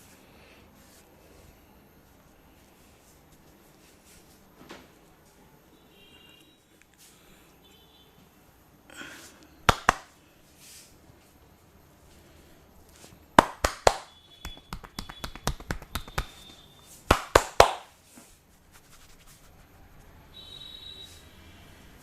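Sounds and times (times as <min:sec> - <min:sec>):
hands striking loud cracks: 0:09.7 - 0:10.1, 0:13.4 - 0:16.5, 0:17.1 - 0:17.9.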